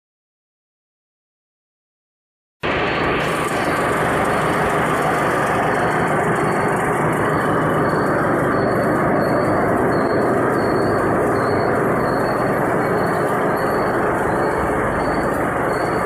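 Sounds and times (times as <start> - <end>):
loud machinery din: 2.6 - 16.0
faint high tones: 5.3 - 16.0.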